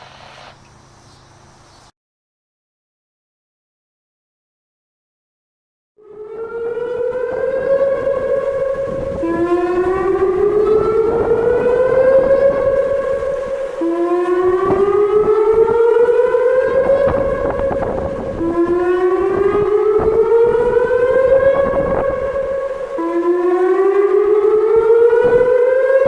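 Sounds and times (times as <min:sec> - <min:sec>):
electronic siren whoop tone: 0:06.0 - 0:26.0.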